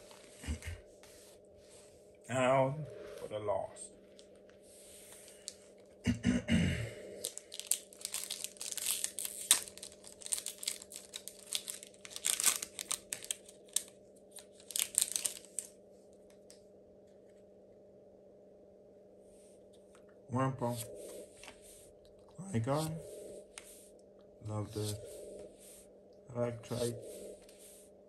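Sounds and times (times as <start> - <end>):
foil wrapper tearing and crinkling: 7.2 - 15.7.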